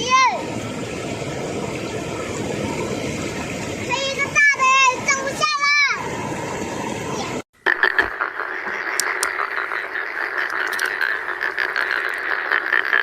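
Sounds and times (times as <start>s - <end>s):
chorus of frogs croaking: 7.6s - 13.0s.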